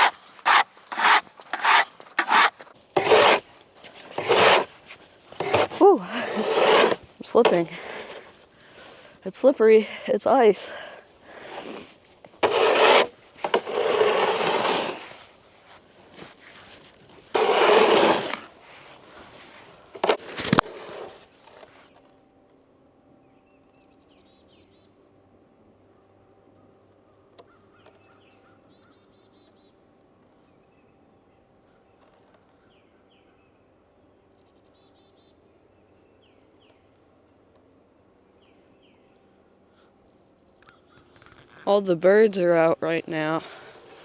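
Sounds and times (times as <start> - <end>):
shovel knock: 0.0 - 3.4
snow shovel scraping on ice: 0.0 - 8.3, 12.4 - 15.3, 16.2 - 21.8
faint birds chirping: 37.7 - 41.7.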